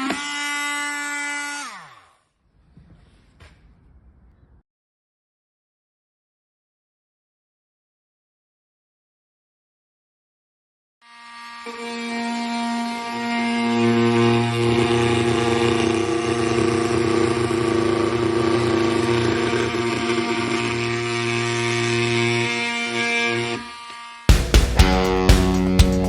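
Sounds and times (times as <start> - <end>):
oscillating multi-tool buzzing: 0.0 - 2.2, 11.0 - 25.2
guitar music: 13.6 - 20.5, 24.3 - 26.0.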